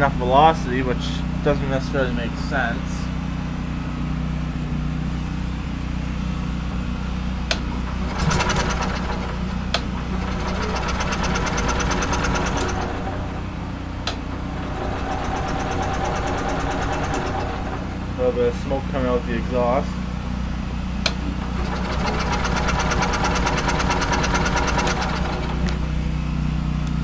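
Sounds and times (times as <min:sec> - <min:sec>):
generator engine running: 0:00.0 - 0:27.0.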